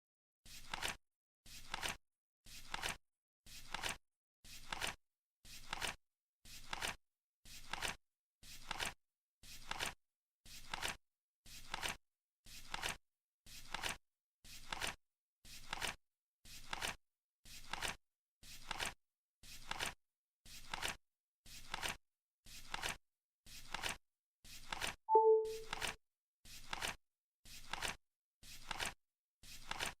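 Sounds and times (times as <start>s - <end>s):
short beep: 25.1s - 25.8s.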